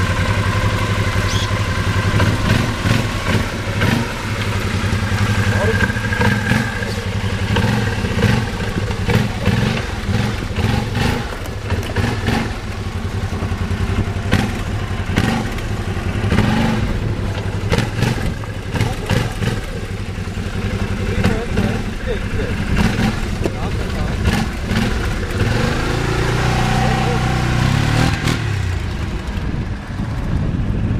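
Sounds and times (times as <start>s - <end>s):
atv engine revving: 0.0s - 30.9s.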